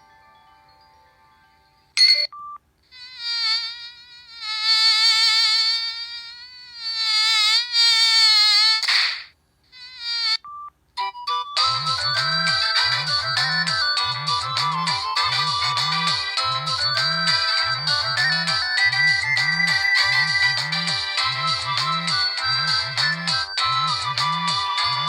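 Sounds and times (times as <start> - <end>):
short beeps: 2.0 - 2.6
buzzy wavering phone ringtone: 11.0 - 25.0.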